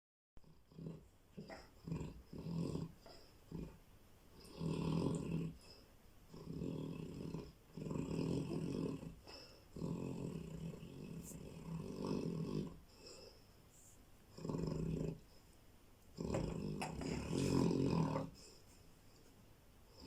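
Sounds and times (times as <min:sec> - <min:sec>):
dog snoring: 0:00.4 - 0:03.8, 0:04.4 - 0:13.4, 0:14.3 - 0:15.3, 0:16.1 - 0:18.6.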